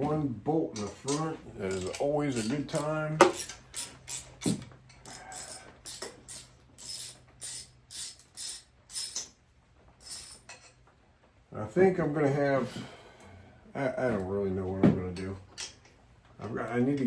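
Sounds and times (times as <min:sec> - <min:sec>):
socket ratchet clicking: 0:01.7 - 0:09.3.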